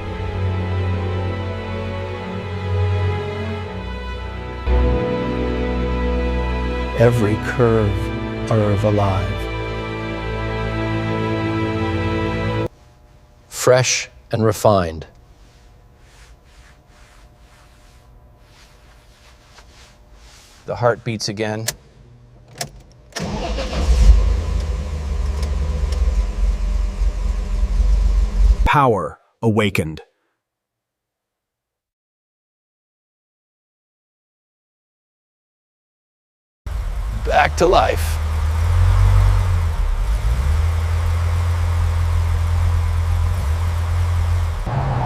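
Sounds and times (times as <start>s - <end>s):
car engine starting and idling: 22.4s - 28.7s, 36.7s - 45.0s.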